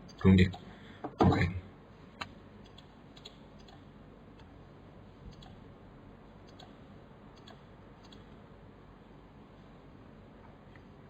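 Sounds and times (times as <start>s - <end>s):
low room hum: 0.0s - 11.0s
computer mouse clicks: 2.2s - 3.8s, 5.3s - 5.6s, 6.4s - 6.8s, 7.4s - 8.3s.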